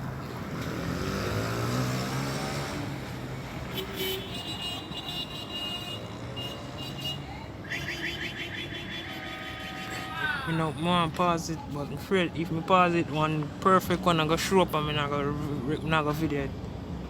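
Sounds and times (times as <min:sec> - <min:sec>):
vehicle engine passing: 0:00.0 - 0:03.7
urban background noise: 0:00.0 - 0:17.0.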